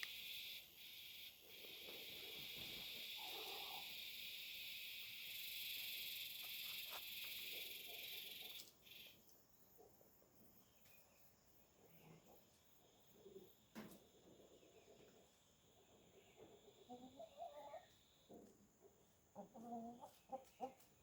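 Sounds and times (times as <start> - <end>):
high-pitched insect chorus: 0.0 - 9.2.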